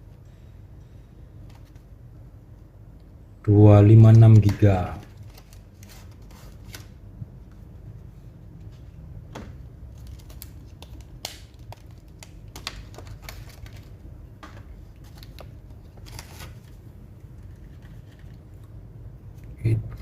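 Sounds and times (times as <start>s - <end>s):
low steady hum: 0.0s - 20.0s
hands handling laptop parts: 8.6s - 18.5s.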